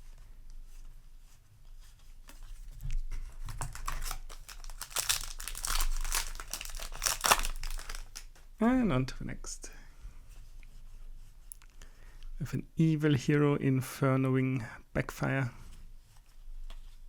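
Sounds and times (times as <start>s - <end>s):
cards being handled: 3.3s - 8.3s
foil wrapper crinkling and tearing: 3.4s - 8.4s.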